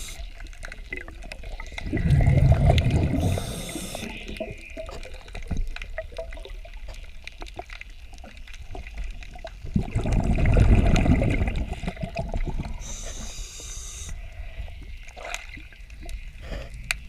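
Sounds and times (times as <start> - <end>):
scuba exhalation bubbles: 0.0 - 6.8, 9.4 - 13.0
crackling clicks in water: 0.0 - 14.2, 14.8 - 17.0.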